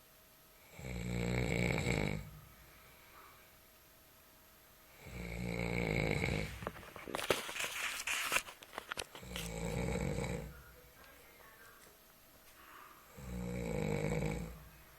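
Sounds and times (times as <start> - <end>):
person snoring: 0.6 - 2.4, 4.9 - 6.6, 9.2 - 10.6, 13.1 - 14.7
noisy rush of breath with clicks: 12.5 - 13.1.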